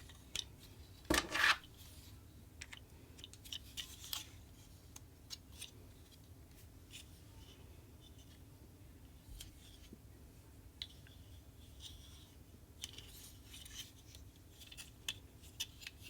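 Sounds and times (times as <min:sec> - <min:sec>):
plastic packaging scraping rustle: 0:01.1 - 0:01.9.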